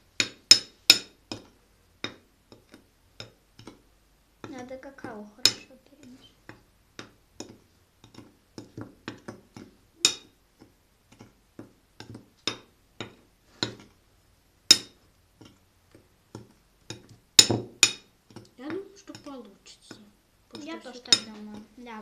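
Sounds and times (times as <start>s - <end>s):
spoon clinking against a dish: 10.0s - 10.4s, 20.5s - 21.4s.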